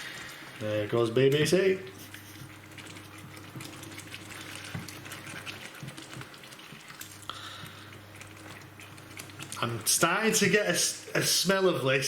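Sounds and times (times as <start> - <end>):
low steady hum: 0.0 - 12.0
sauce bubbling and popping in a pan: 2.5 - 10.3.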